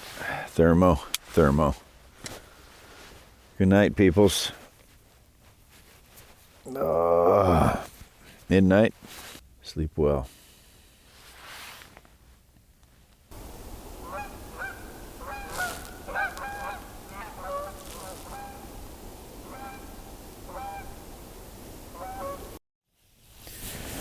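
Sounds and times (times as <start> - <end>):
steady background hiss: 0.0 - 24.0
geese honking: 13.9 - 18.7, 19.4 - 19.9, 20.5 - 20.9, 21.9 - 22.5.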